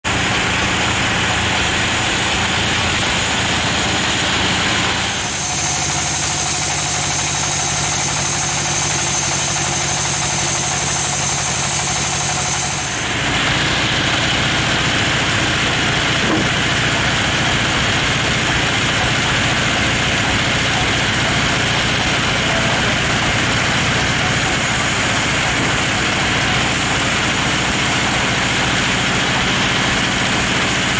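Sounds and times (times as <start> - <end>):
band sawmill running: 0.0 - 30.9
saw blade whine cutting log: 0.0 - 30.9.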